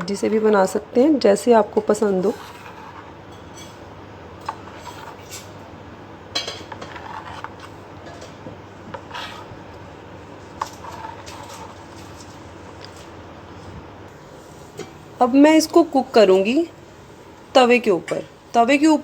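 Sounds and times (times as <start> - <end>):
scraping in cake batter: 0.0 - 1.1, 1.8 - 3.8, 4.4 - 5.6, 6.5 - 13.7.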